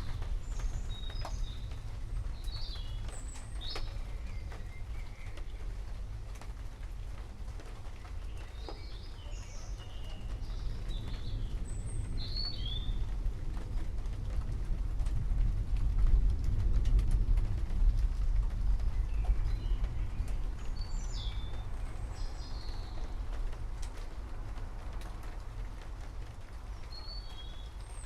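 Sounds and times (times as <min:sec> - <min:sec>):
birds chirping: 0:00.0 - 0:06.4, 0:07.5 - 0:13.9, 0:18.7 - 0:23.4, 0:26.6 - 0:28.0
low rumble: 0:00.0 - 0:28.0.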